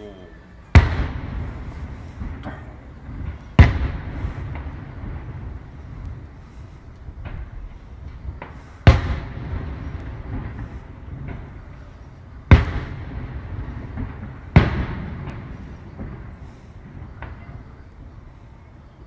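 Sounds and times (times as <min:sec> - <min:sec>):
low background rumble: 0:00.0 - 0:19.0
fireworks bursting with loud bangs: 0:00.7 - 0:18.9
faint fireworks pops: 0:00.7 - 0:19.0.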